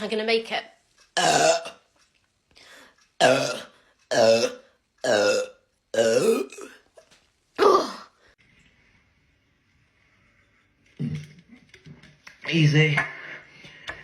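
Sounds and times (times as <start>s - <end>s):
person burping loudly: 1.2s - 1.9s, 3.2s - 7.0s, 7.6s - 8.1s.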